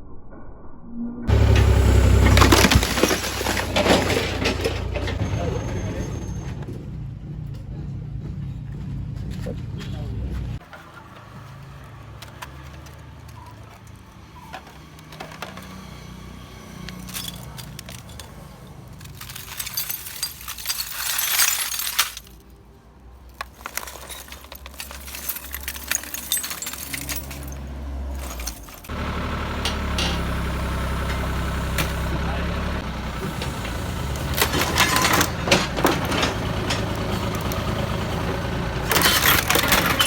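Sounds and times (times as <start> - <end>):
excavator engine running: 1.3 - 21.1, 23.3 - 40.0
brittle material cracking and clinking: 16.8 - 22.6, 23.3 - 28.9.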